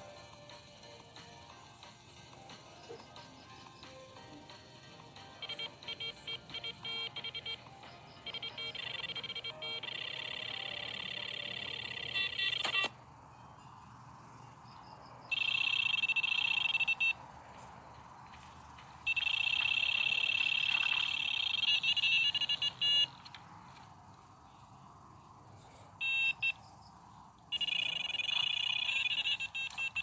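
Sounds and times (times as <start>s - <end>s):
warbling electronic alarm beeping: 5.3s - 13.0s, 15.3s - 17.2s, 19.0s - 23.2s, 26.0s - 26.6s, 27.5s - 30.0s.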